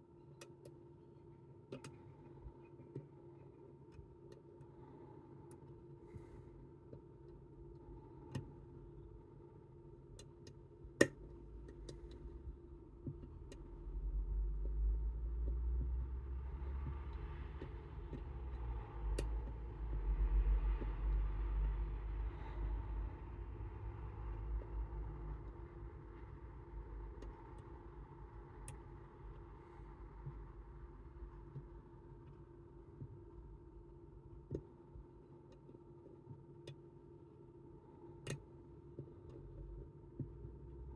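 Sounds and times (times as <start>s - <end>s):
low rumble: 12.1s - 31.9s.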